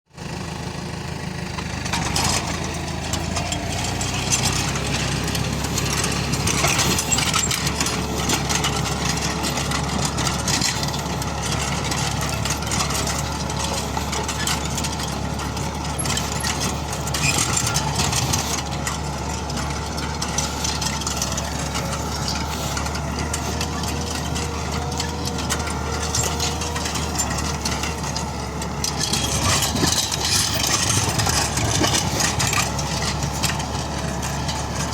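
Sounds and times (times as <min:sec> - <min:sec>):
tractor diesel engine running: 0:00.1 - 0:34.9
rattling and knocking: 0:01.9 - 0:34.9.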